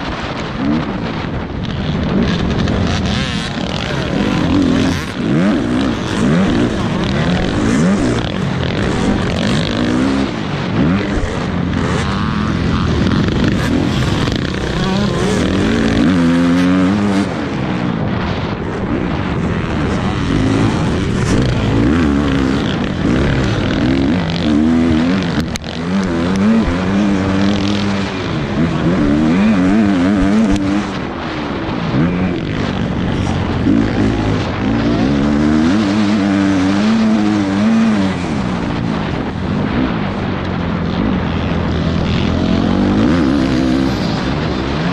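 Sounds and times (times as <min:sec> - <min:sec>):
dirt bike engine revving: 0:00.0 - 0:44.9
steady rush of noise: 0:00.0 - 0:44.9.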